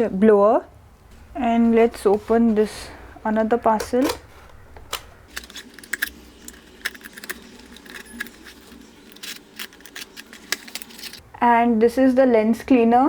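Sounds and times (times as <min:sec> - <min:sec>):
packaging crinkling: 0:04.2 - 0:11.2.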